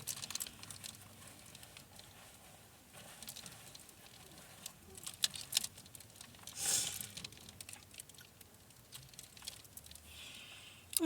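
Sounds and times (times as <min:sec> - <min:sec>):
laundry rustling: 0:00.0 - 0:08.1.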